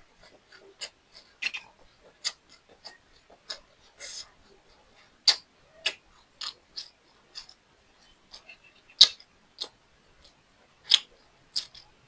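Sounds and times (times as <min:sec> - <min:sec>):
crunchy eating sounds: 0:00.0 - 0:12.0.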